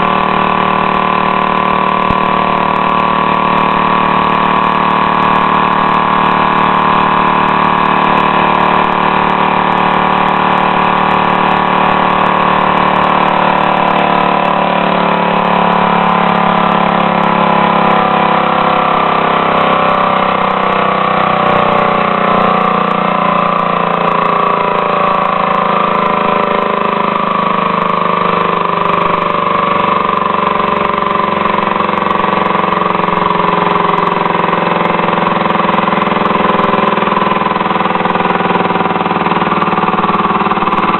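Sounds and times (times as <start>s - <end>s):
air-powered motor running: 0.0s - 40.9s.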